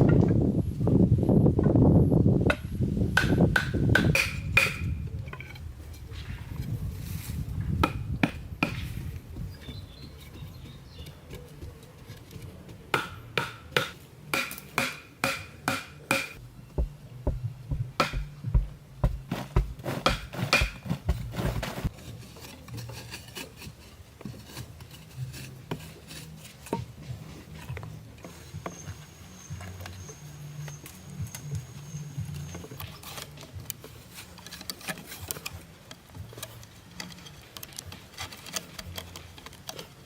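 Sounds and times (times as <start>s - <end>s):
sharp ringing knocks: 14.8s - 21.4s
scraping and rubbing: 16.8s - 28.7s.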